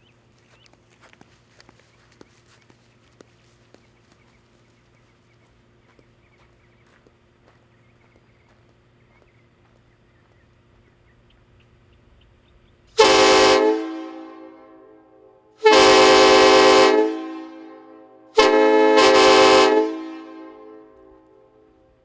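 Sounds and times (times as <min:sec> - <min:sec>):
train horn chord blasts: 0:13.0 - 0:22.0.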